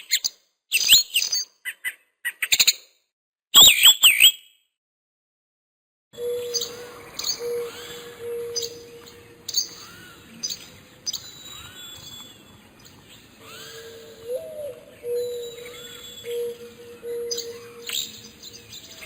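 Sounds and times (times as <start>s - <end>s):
low held bird note: 6.2s - 10.4s, 13.4s - 18.3s
high bird chirps: 6.2s - 19.0s
whistled bird notes: 6.2s - 19.0s.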